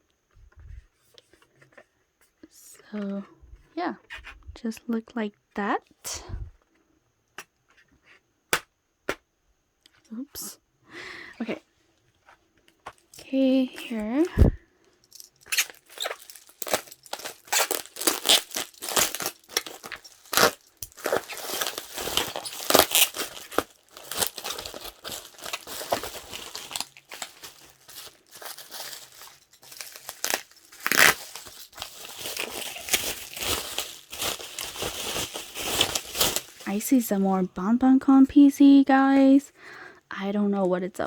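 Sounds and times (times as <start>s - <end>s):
packaging crinkling: 12.9s - 37.0s.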